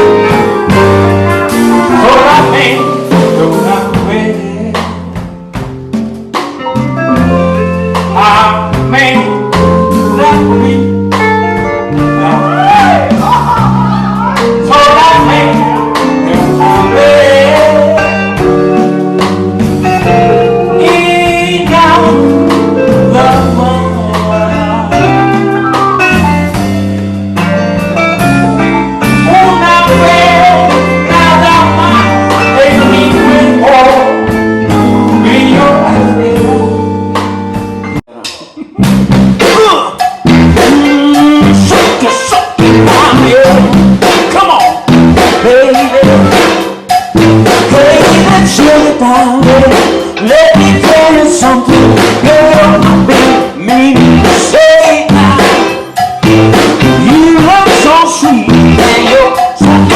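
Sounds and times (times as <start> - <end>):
sliding lead melody: 0.0 - 38.2, 38.8 - 59.9
live funk band playing: 0.0 - 59.9.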